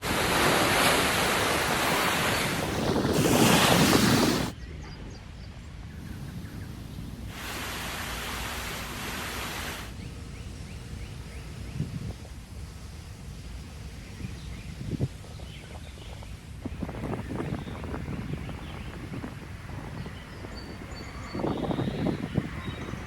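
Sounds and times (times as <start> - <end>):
ocean surf washing in: 0.0 - 4.6, 6.0 - 10.0.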